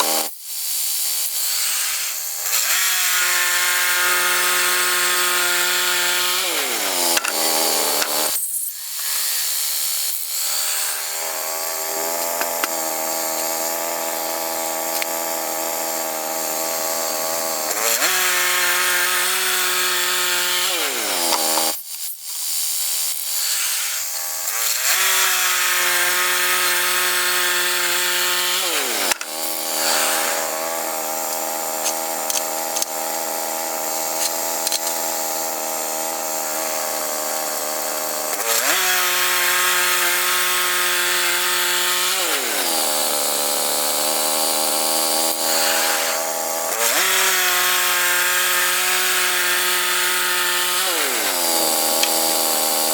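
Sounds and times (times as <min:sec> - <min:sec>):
band saw blade cutting log: 0:00.0 - 0:00.4, 0:01.6 - 0:08.4, 0:10.3 - 0:21.8, 0:23.6 - 0:52.9
sawmill engine running: 0:04.3 - 0:08.3, 0:11.0 - 0:21.8, 0:26.0 - 0:52.9.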